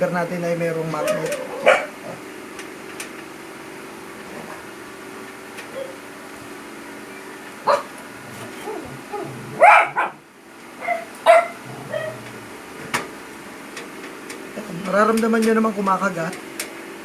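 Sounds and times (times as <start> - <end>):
dog barking: 0.9 - 2.3, 5.7 - 6.0, 7.6 - 10.2, 10.8 - 12.3.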